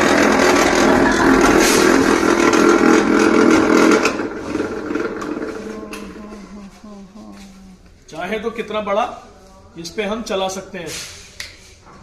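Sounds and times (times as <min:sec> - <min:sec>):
wire stripping machine running: 0:00.0 - 0:06.6.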